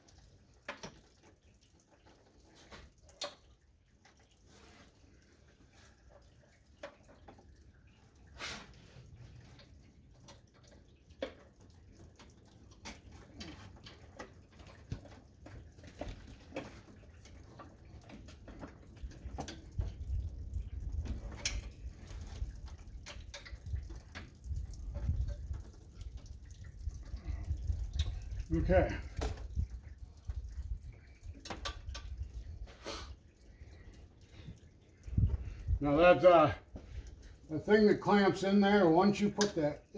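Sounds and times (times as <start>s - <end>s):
small clicks and knocks: 0.0s - 4.8s, 6.1s - 8.2s, 9.2s - 28.5s, 29.1s - 32.6s, 39.2s - 39.8s.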